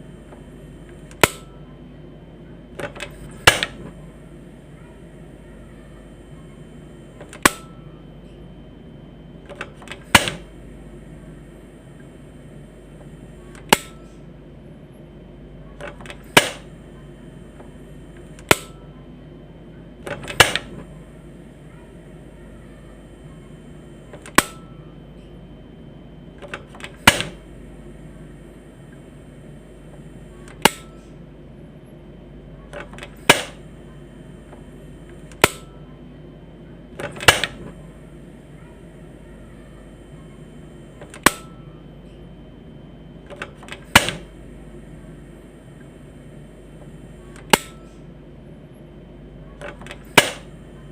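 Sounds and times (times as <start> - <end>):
piezo igniter snapping: 0.3 - 1.5, 2.8 - 3.9, 7.2 - 7.8, 9.4 - 10.5, 13.0 - 14.0, 15.8 - 16.7, 17.6 - 18.8, 20.0 - 20.8, 24.1 - 24.7, 26.4 - 27.4, 30.5 - 31.0, 32.7 - 33.6, 35.2 - 35.7, 37.0 - 37.7, 41.0 - 41.6, 43.3 - 44.3, 47.4 - 47.8, 49.6 - 50.5
stove knob clicks: 37.0 - 37.6, 47.4 - 47.8.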